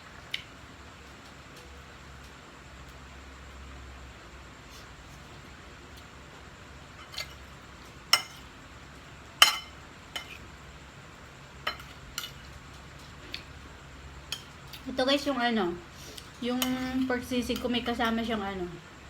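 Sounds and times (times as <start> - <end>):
cutlery clinking on plate: 9.4 - 10.4.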